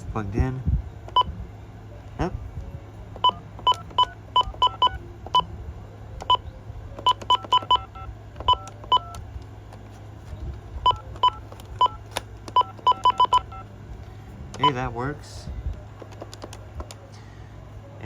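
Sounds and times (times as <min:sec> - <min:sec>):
faint low hum: 0:00.0 - 0:18.0
phone keypad beeps: 0:03.2 - 0:05.5, 0:06.2 - 0:09.2, 0:10.8 - 0:13.7, 0:14.6 - 0:14.9.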